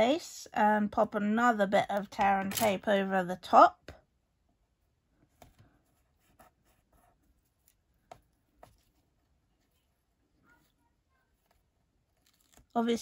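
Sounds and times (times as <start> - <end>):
tape and card rustling: 11.4 - 12.8.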